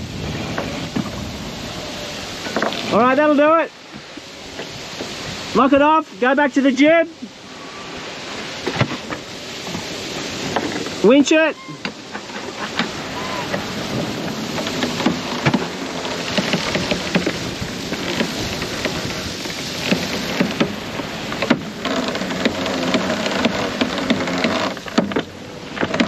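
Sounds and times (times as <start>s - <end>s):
wind and water rushing: 0.0s - 26.0s
winch clicking and rattling: 11.8s - 26.0s.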